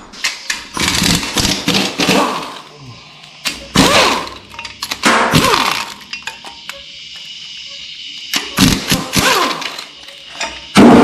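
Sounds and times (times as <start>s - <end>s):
metal parts clanking: 3.4s - 7.4s, 8.2s - 10.9s.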